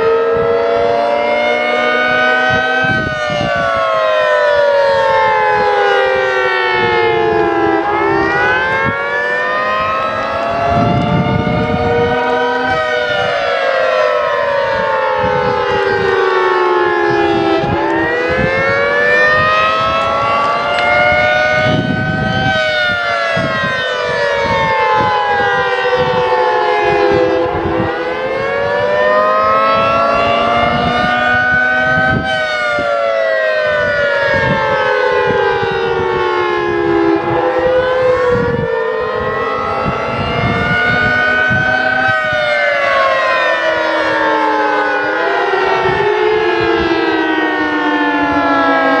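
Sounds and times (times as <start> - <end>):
civil defense siren wailing: 0.0 - 49.0.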